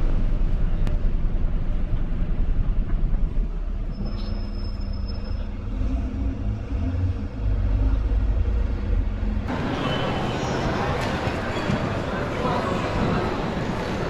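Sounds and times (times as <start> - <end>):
train rumbling: 0.0 - 14.0.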